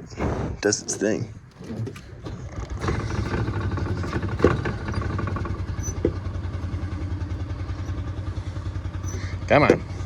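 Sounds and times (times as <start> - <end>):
engine cranking on starter: 0.0 - 10.0.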